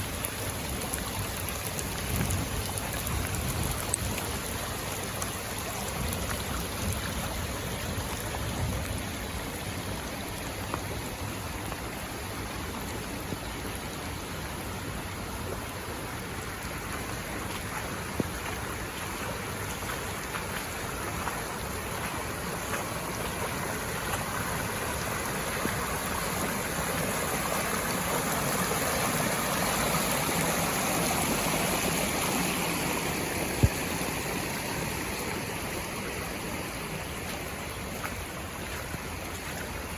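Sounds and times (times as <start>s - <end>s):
runoff water rushing: 0.0s - 39.9s
steady rain falling: 0.0s - 39.9s.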